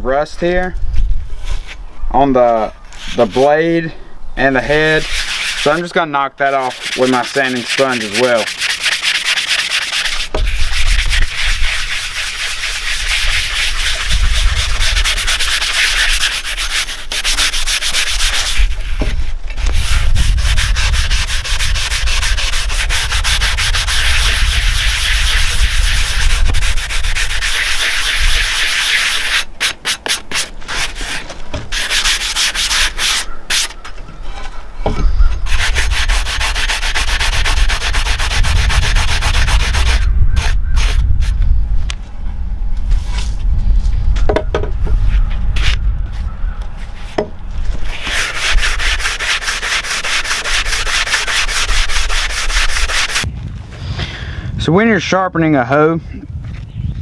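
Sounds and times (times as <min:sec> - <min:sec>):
sanding sponge scrubbing metal: 0:03.0 - 0:03.6, 0:04.5 - 0:33.9, 0:35.4 - 0:41.2, 0:47.8 - 0:53.2.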